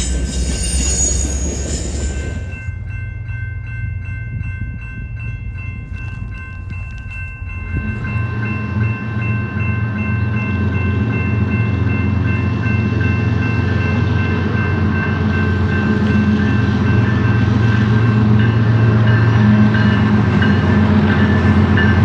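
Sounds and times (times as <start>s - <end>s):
train wheels squealing on rail: 0.0s - 2.7s
locomotive engine rumble: 0.0s - 3.0s
rapidly struck bell ringing: 0.0s - 22.0s.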